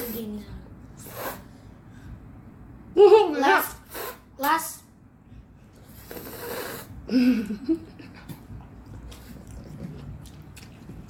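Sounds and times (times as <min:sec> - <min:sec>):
eating clicks and smacks: 0:08.2 - 0:11.0.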